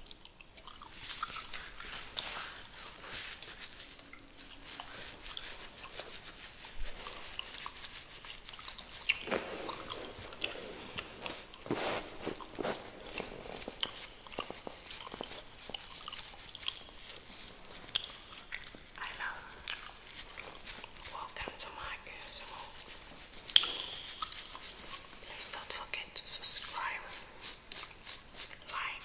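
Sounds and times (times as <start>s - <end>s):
fingernails scratching beard hair: 1.1s - 21.6s.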